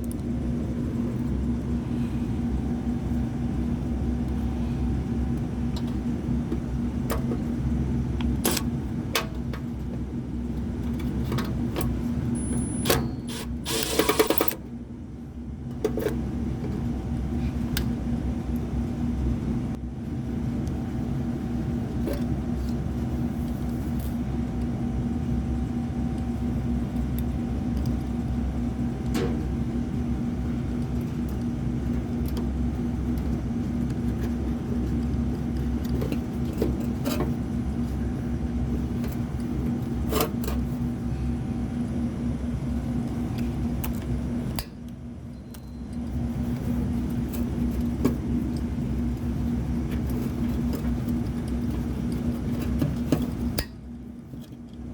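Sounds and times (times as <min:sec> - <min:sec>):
low machine hum: 0:00.0 - 0:54.9.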